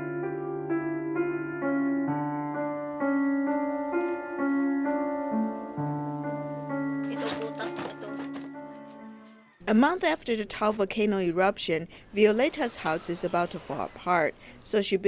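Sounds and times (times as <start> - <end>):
soft piano music: 0.0 - 9.6.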